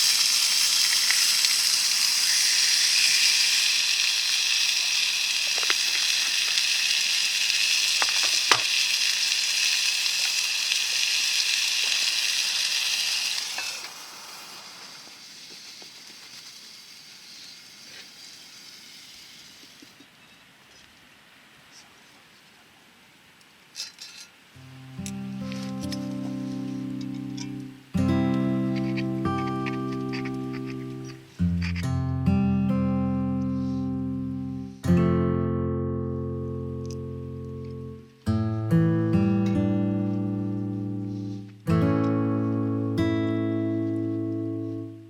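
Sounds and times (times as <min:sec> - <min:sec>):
steak sizzling in a skillet: 0:00.0 - 0:20.0, 0:24.6 - 0:31.9, 0:32.7 - 0:34.8, 0:39.4 - 0:45.0.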